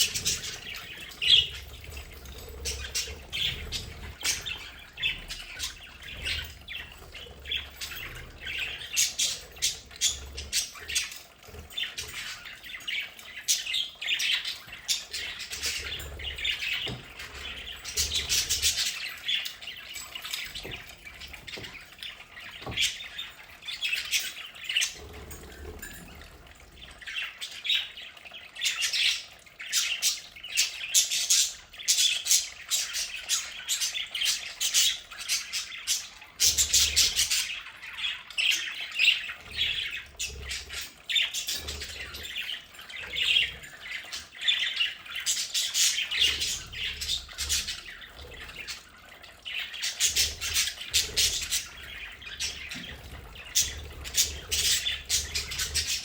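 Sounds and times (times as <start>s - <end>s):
budgerigars chattering: 28.7s - 56.0s.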